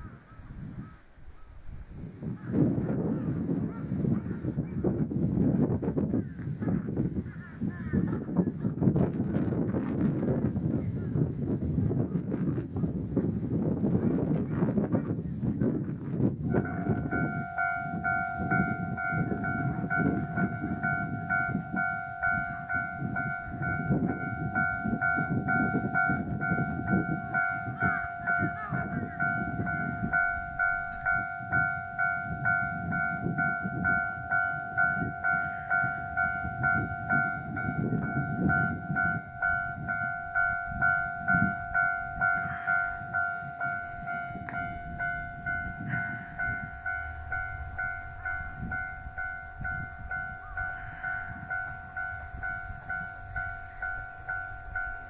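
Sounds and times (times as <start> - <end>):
level crossing warning bell: 16.2 - 55.0.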